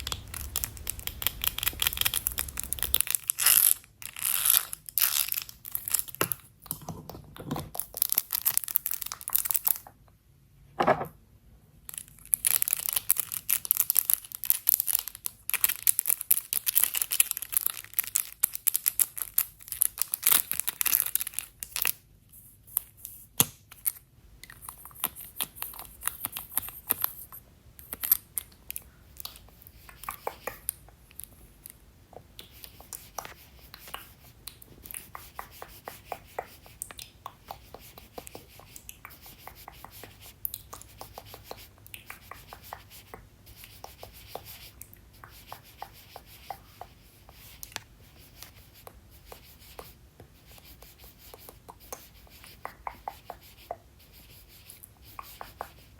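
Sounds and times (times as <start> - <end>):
scratchy rubbing and brushing: 0.0 - 6.2, 24.6 - 28.2, 32.4 - 55.9.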